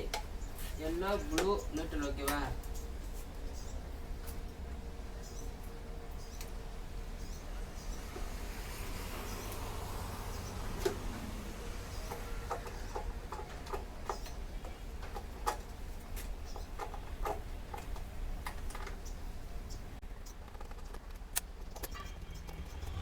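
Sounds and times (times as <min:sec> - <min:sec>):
clicks and taps of tools: 0:01.3 - 0:02.9.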